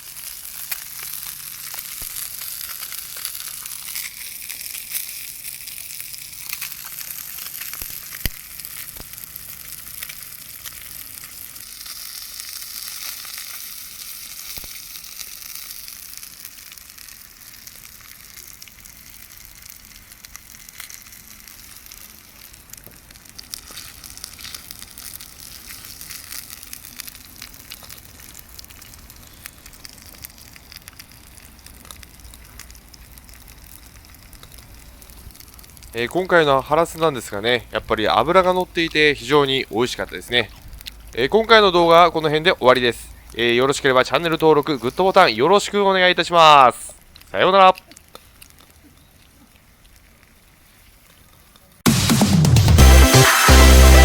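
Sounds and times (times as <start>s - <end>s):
fish sizzling in a frying pan: 0.0s - 36.4s.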